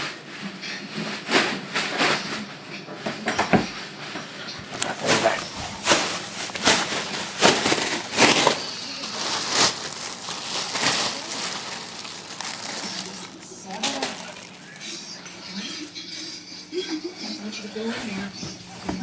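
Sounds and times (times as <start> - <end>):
wrapping paper tearing and rustling: 4.6 - 15.2.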